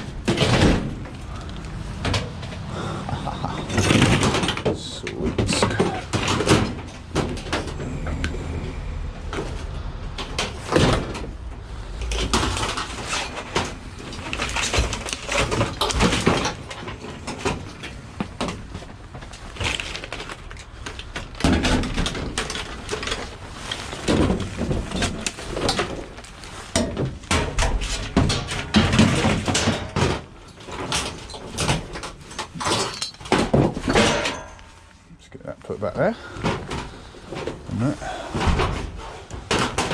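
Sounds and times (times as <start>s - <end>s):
scrap metal knocking and scraping: 0.0s - 20.4s.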